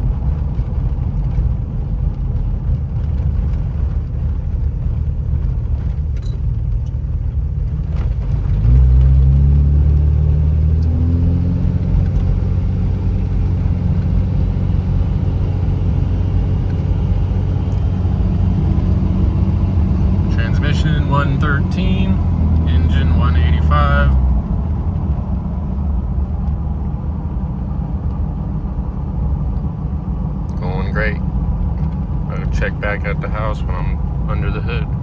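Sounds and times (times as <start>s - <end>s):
diesel truck engine droning: 0.0s - 35.0s.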